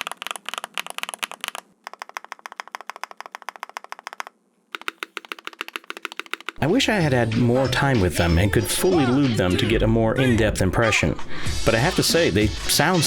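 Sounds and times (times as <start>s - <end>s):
fast typing on mechanical keyboard: 0.0s - 6.6s.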